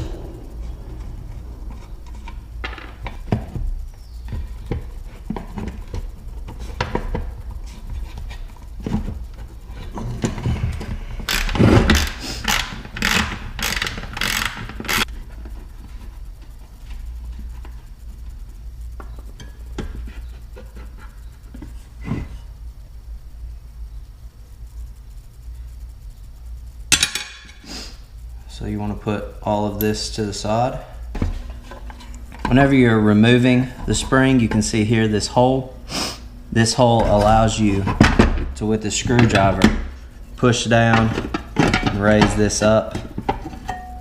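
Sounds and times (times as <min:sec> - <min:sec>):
socket ratchet strokes: 0:11.2 - 0:15.1.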